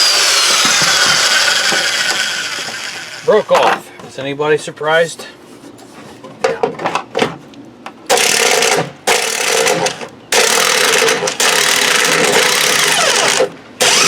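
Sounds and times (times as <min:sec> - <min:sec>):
electric impact wrench hammering: 0:00.0 - 0:03.6, 0:08.1 - 0:14.0.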